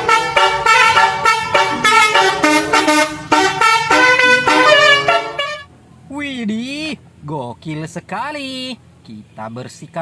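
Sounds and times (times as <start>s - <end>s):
multi-tone horn playing a tune: 0.0s - 5.7s.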